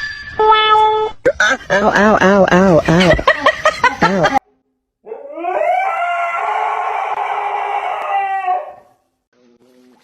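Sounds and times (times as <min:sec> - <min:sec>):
dog howling: 0:05.1 - 0:08.8.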